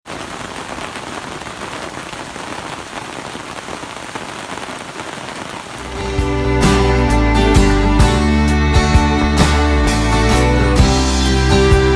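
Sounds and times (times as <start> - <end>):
steady rain falling: 0.0 - 8.1
guitar music: 5.8 - 11.9.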